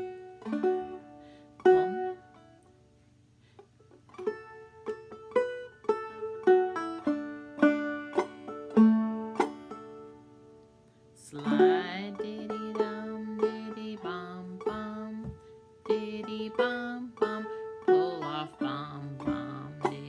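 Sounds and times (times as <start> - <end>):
banjo picking: 0.0 - 20.0.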